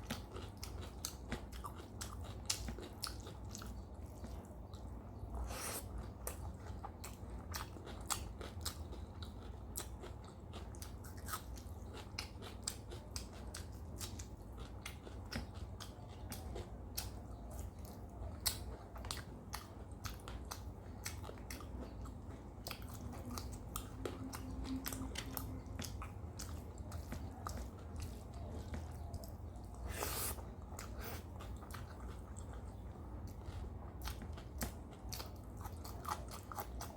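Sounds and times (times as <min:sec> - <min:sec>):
chewing with crunchy clicks: 0:00.0 - 0:36.9.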